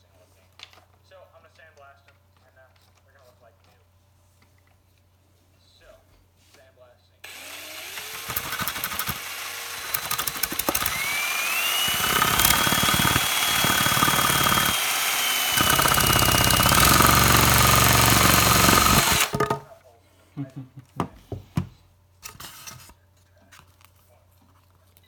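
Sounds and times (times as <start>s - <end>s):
electric drill motor whine: 7.3s - 19.6s
plastic blade rattling: 7.8s - 19.7s.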